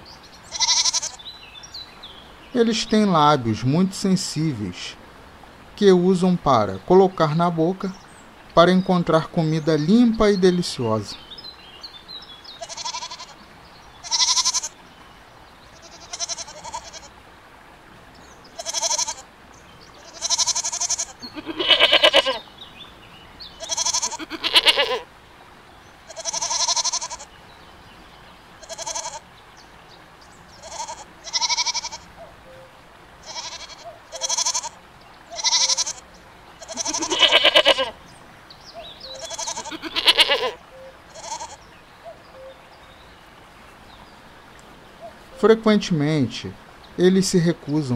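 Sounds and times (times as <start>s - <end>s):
goats bleating: 0.5s - 1.2s, 12.6s - 13.4s, 14.0s - 14.8s, 15.7s - 17.2s, 18.5s - 19.3s, 20.0s - 22.4s, 23.5s - 25.1s, 26.1s - 27.4s, 28.6s - 29.3s, 30.6s - 32.1s, 33.2s - 38.0s, 39.1s - 41.7s.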